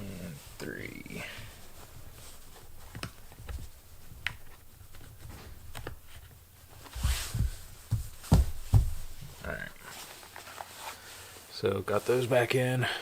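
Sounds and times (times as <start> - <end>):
dull thumps: 1.4 - 9.8.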